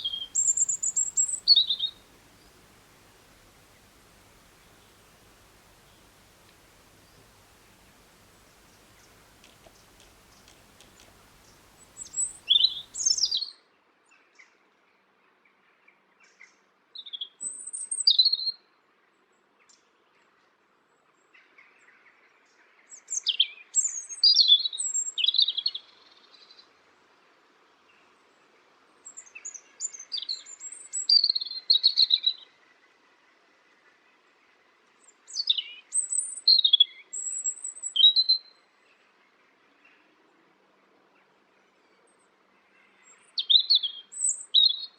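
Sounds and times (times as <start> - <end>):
songbird twittering: 0.0 - 13.4, 35.4 - 38.4
faint low hum with clicks: 2.3 - 12.4.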